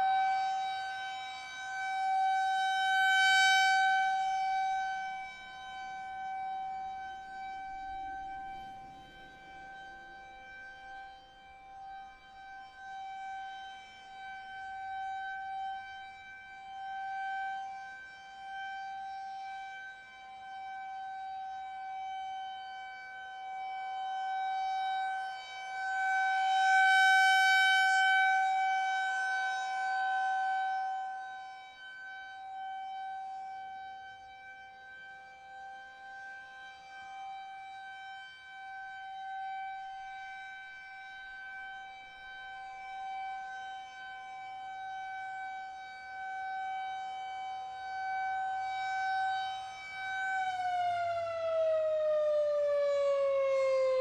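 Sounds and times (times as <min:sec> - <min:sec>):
rotating warning siren: 0:12.3 - 0:54.0.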